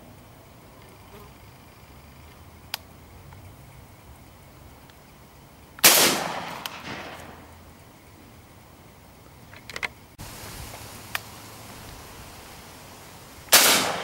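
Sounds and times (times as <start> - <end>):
shotgun shot: 5.8 - 7.4, 13.5 - 14.0.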